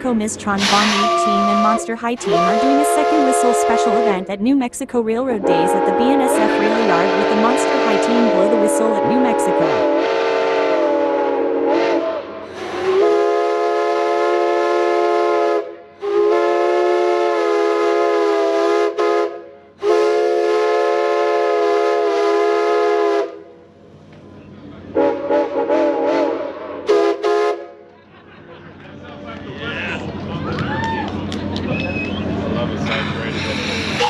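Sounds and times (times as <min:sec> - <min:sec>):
steam locomotive whistle: 0:00.4 - 0:04.4, 0:05.3 - 0:23.6, 0:24.9 - 0:27.9.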